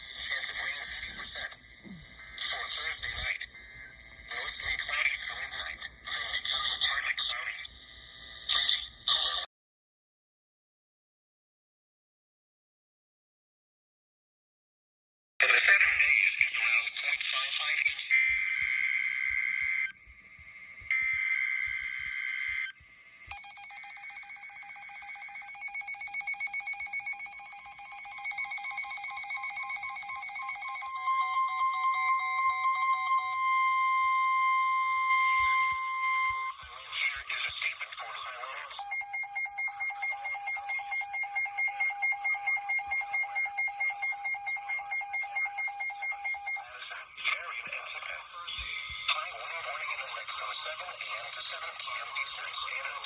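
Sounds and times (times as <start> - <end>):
data tones: 15.8 - 53.0
steady warning tone: 16.6 - 46.8
pulsing multi-pitch beep: 17.6 - 37.8, 38.6 - 46.7
electronic warble: 18.2 - 36.5.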